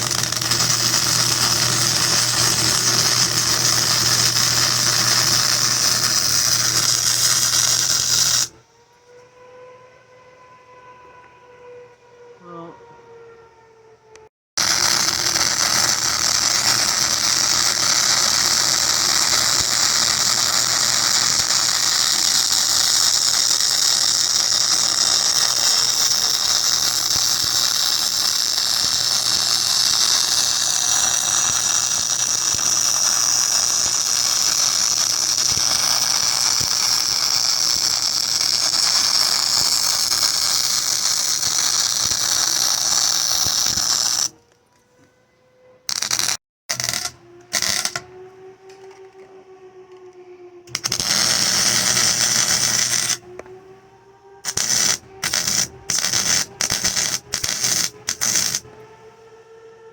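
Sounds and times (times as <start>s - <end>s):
welder arc crackling and hissing: 0.0s - 8.5s, 14.6s - 44.4s, 45.9s - 48.1s, 50.7s - 53.3s, 54.4s - 58.7s.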